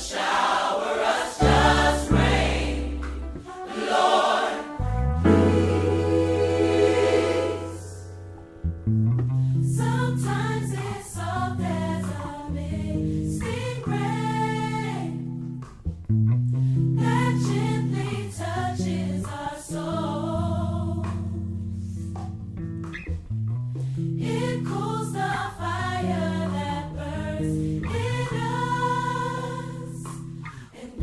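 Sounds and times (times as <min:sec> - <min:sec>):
choir singing: 0:00.0 - 0:08.3, 0:09.7 - 0:15.2, 0:17.0 - 0:21.2, 0:24.2 - 0:31.0
bass line: 0:01.4 - 0:03.6, 0:04.8 - 0:25.0.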